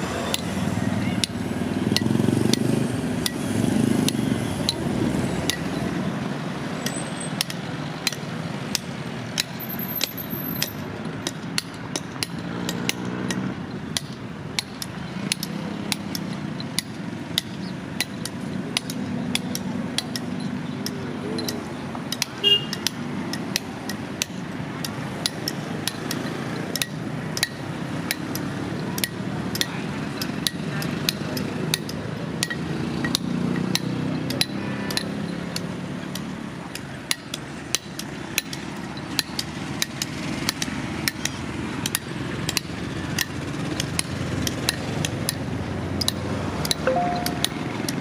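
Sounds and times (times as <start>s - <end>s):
hammer striking metal: 46.8s - 47.8s.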